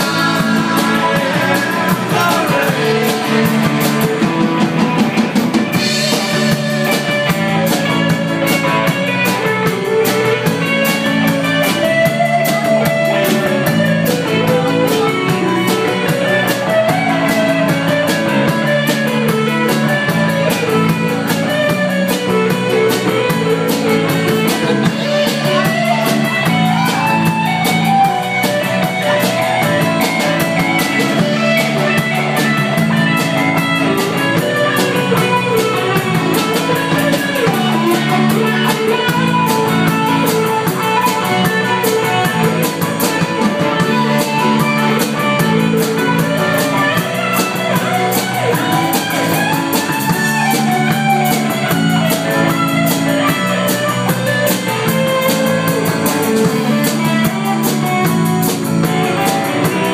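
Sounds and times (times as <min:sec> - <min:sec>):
live rock band playing: 0:00.0 - 0:59.9.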